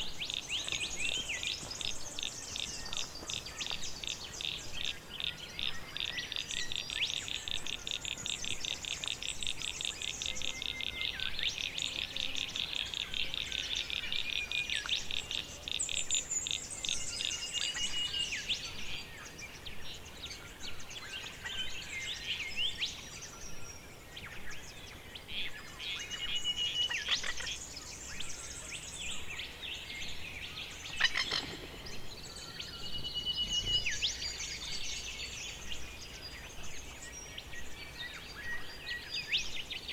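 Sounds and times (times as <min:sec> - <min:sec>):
birds singing: 0:00.0 - 0:39.9.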